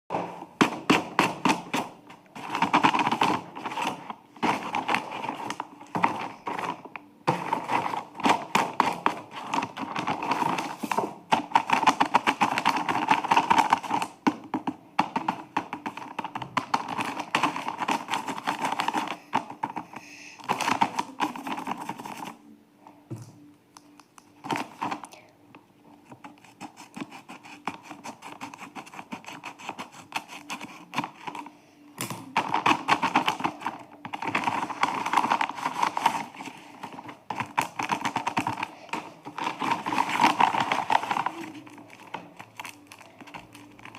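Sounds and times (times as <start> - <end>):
paper and plastic crinkling: 0.1 - 22.5, 23.2 - 43.9.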